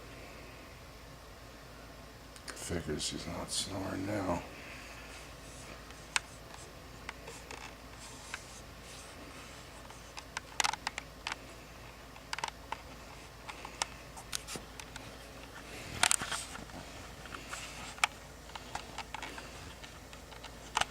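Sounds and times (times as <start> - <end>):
low hiss: 0.0 - 20.9
small clicks and taps: 12.1 - 15.1.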